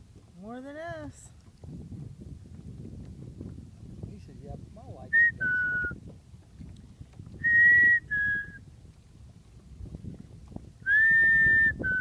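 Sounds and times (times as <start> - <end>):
two-note whistle: 5.2 - 6.0, 7.4 - 8.6, 10.9 - 12.0.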